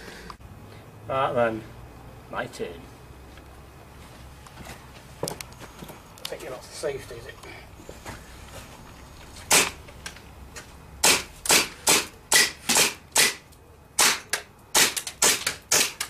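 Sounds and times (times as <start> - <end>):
bb gun shots: 9.5 - 9.8, 11.0 - 13.4, 14.0 - 16.0.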